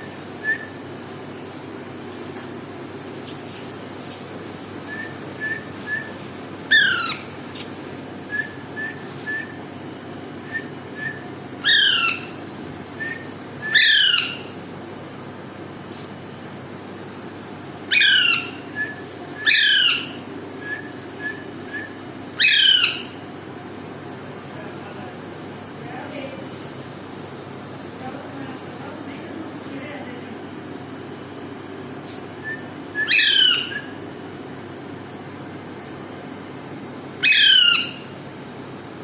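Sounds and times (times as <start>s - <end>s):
parakeet screeching: 6.7s - 7.7s, 11.6s - 12.3s, 13.6s - 14.5s, 17.9s - 18.6s, 19.4s - 20.2s, 22.4s - 23.2s, 33.0s - 33.9s, 37.2s - 38.1s
soft whistled chirps: 18.7s - 19.1s.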